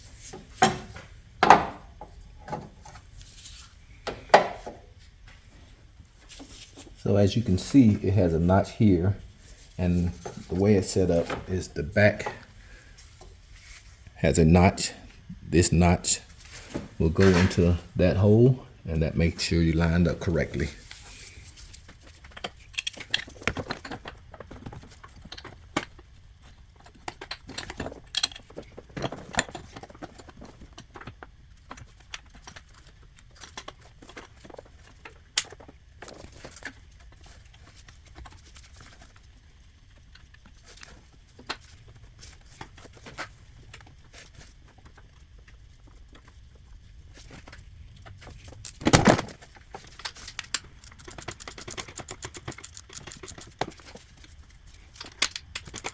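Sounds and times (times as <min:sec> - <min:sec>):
metal tools clinking and rattling: 0:48.6 - 0:49.4, 0:50.8 - 0:53.7, 0:55.4 - 0:55.9
metal clatter: 0:48.7 - 0:49.4, 0:50.8 - 0:53.6, 0:55.5 - 0:55.9
ratchet clicks: 0:48.7 - 0:49.4, 0:50.8 - 0:53.7, 0:55.6 - 0:55.9.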